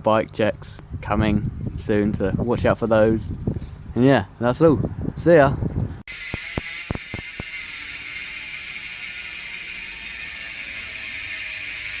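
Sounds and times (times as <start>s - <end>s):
bicycle freehub ratcheting: 6.1s - 12.0s.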